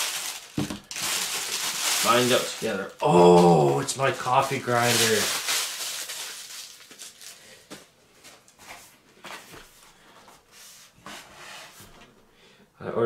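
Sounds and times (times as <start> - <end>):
packaging rustling: 0.0 - 3.0, 3.7 - 8.4.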